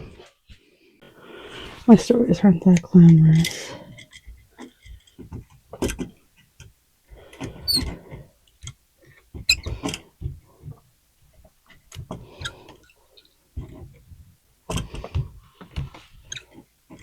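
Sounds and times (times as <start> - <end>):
short high squeaks: 7.7 - 7.9.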